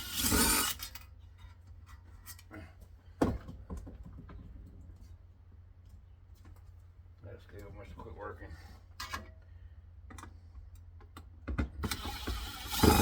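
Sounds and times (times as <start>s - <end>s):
metal parts rubbing and scraping: 0.0s - 1.0s.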